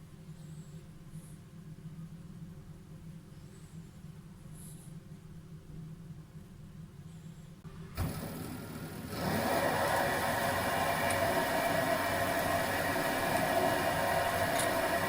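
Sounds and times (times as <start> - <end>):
electric motor whirring: 8.0 - 15.0.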